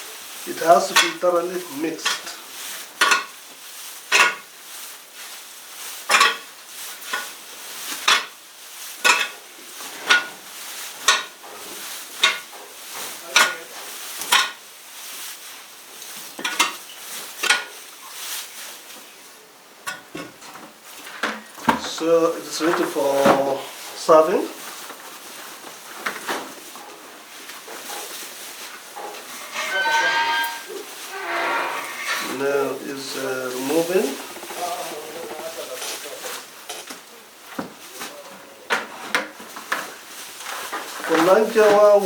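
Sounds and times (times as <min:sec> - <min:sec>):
damp feed rustling and scraping: 0:21.8 - 0:36.7.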